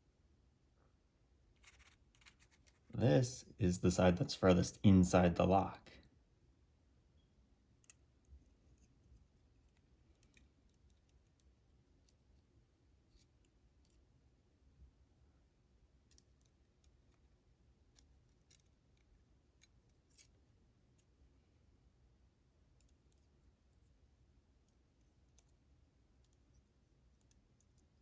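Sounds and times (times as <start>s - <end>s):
small metal lock pins clicking: 10.1s - 12.2s.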